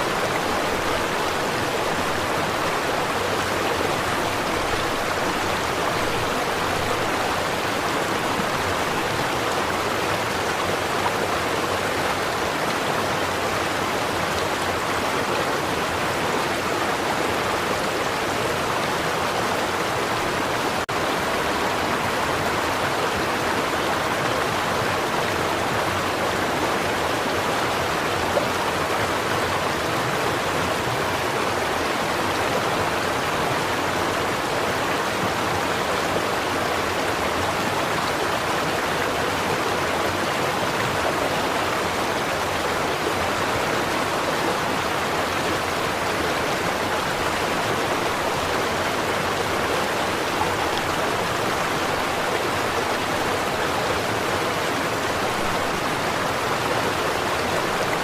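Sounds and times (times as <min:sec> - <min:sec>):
stream of running water: 0:00.0 - 0:58.0.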